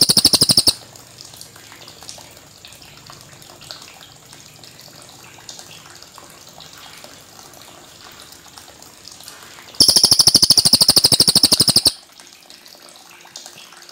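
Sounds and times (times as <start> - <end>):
faint bird chirps: 0.0 - 0.8, 9.8 - 12.0
songbird rapid rolling trill: 0.0 - 0.8, 9.8 - 12.0.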